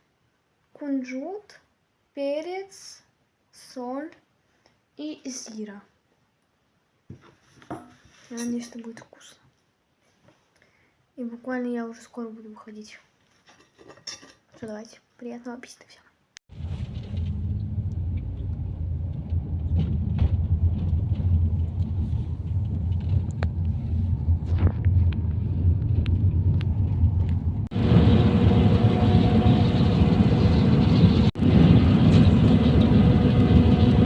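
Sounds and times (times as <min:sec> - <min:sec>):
road vehicle rumble: 0:16.5 - 0:34.0.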